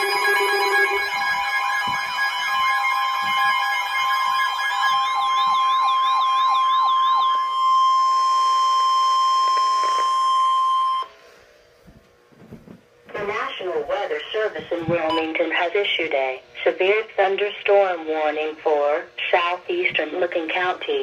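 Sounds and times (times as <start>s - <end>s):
layered steady beeping tones: 0.0s - 11.1s
steady high alert tone: 0.0s - 11.1s
yelping siren sweeps: 0.0s - 11.1s.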